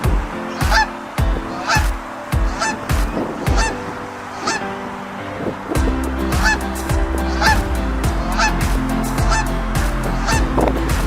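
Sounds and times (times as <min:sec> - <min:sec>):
goose honking: 0:00.6 - 0:00.9, 0:01.5 - 0:04.6, 0:06.3 - 0:08.6, 0:09.2 - 0:09.5, 0:10.1 - 0:10.5.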